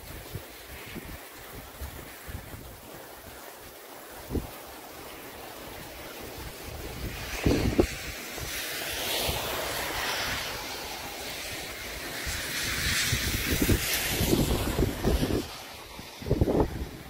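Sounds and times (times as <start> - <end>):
ocean surf washing: 0.0 - 17.0
wind buffeting microphone: 0.0 - 17.0.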